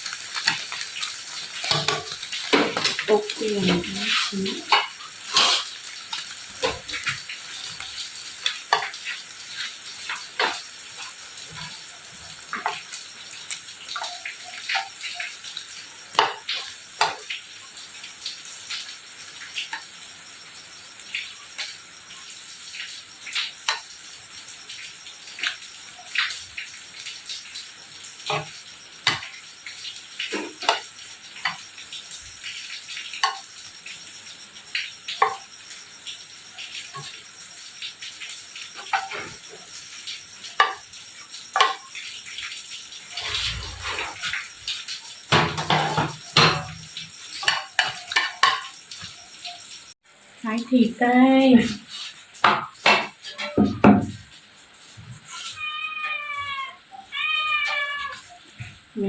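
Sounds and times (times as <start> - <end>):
food sizzling in a pan: 0.0 - 59.0.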